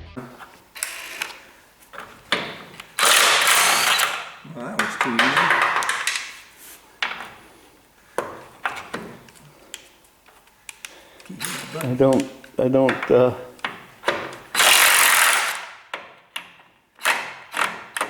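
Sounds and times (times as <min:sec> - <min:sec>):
metal tools knocking: 0:00.8 - 0:06.4, 0:11.3 - 0:18.0
air tool burst: 0:03.0 - 0:04.4, 0:14.5 - 0:15.8.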